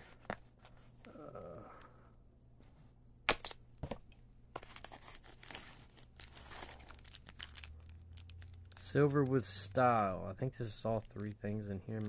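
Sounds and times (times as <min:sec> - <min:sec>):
paper or plastic crinkling: 0:04.6 - 0:12.0
packaging being torn open: 0:04.8 - 0:11.4.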